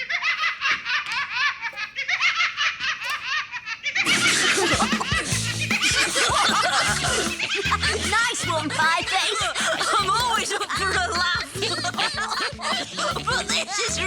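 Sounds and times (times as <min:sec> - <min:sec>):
high-pitched cartoon giggling: 0:00.0 - 0:14.0
background music: 0:04.1 - 0:14.0.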